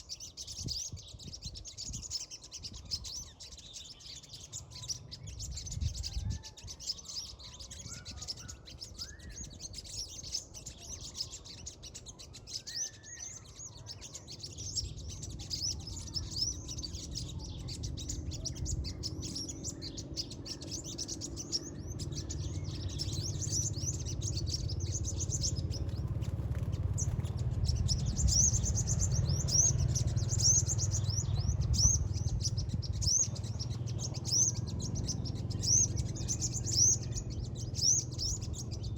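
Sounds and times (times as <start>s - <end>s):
small birds chirping: 0.0s - 38.9s
low rumble: 22.1s - 38.9s.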